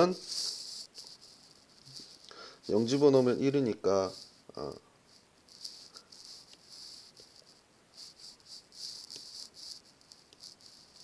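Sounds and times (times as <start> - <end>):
pen scratching on paper: 0.0 - 4.5, 5.1 - 11.0.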